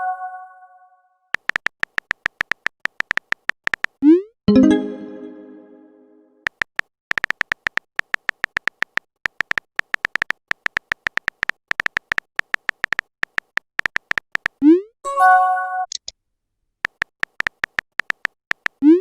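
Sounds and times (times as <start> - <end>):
high electronic typing blips: 1.4 - 4.9, 6.5 - 14.8, 16.8 - 19.0.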